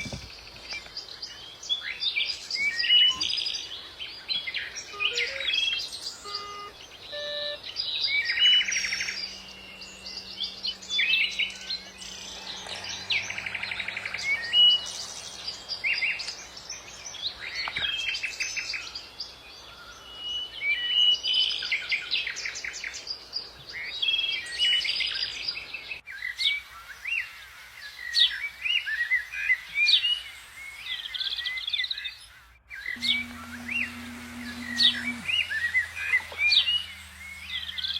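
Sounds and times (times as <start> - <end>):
songbirds singing: 0.0 - 37.9.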